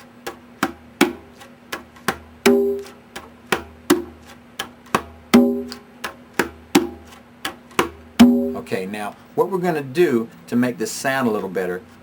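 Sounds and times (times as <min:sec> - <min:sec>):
conga drum played by hand: 0:00.0 - 0:08.7.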